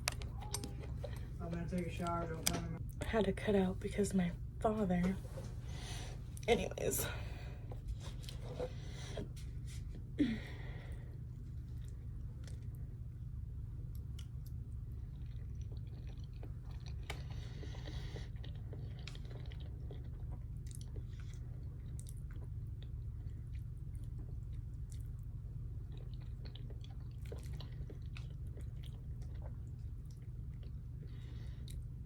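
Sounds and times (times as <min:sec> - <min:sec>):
person chewing food: 0:00.0 - 0:01.4, 0:10.9 - 0:13.0, 0:13.8 - 0:32.0
steady low hum: 0:00.0 - 0:32.0.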